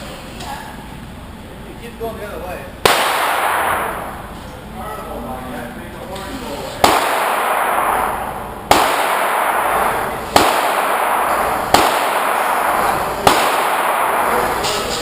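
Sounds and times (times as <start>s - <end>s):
pistol shots echoing: 2.8s - 4.5s, 6.8s - 15.0s.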